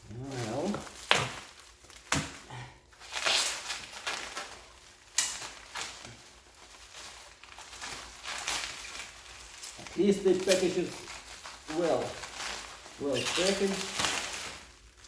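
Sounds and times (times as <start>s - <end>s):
packing material rustling: 0.0s - 15.0s.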